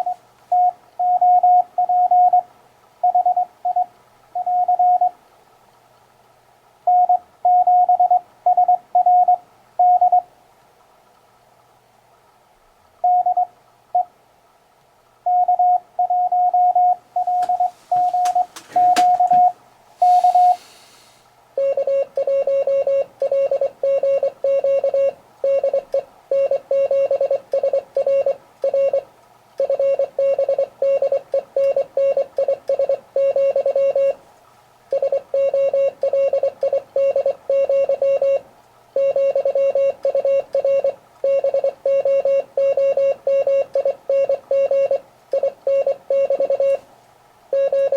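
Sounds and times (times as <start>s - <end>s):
high-pitched morse code tone: 15.3s - 20.6s, 21.6s - 29.0s, 29.6s - 34.2s, 34.9s - 38.4s, 39.0s - 46.8s, 47.5s - 47.9s
low buzzy morse code tone: 15.3s - 20.6s, 21.6s - 34.2s, 34.9s - 46.8s, 47.5s - 47.9s
clicks: 17.2s - 19.5s
hiss: 20.0s - 21.4s.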